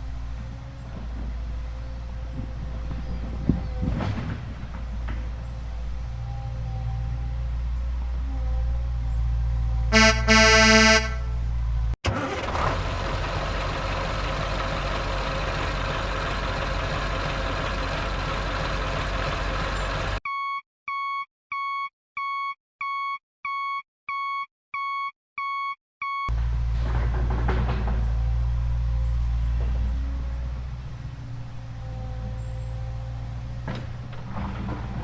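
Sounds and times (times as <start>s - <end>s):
construction vehicle engine running: 0.0s - 20.2s, 26.3s - 35.0s
reversing alarm beeps: 20.3s - 26.3s.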